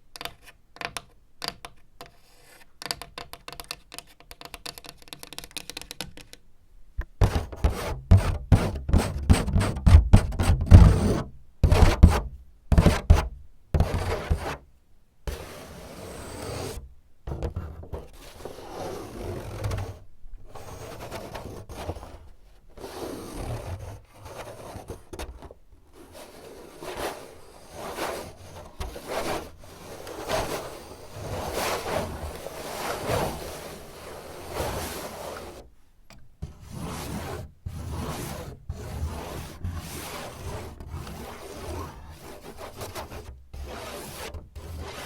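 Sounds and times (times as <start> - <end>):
scratching and rubbing on a surface: 7.2 - 14.6, 15.3 - 35.7, 36.4 - 45.0.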